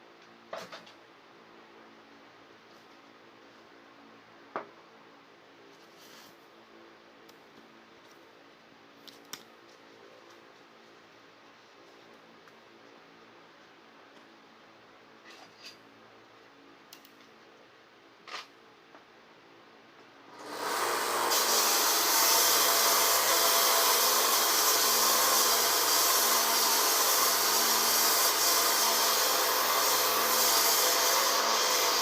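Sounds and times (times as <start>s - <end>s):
belt sander sanding stone: 20.4s - 32.0s.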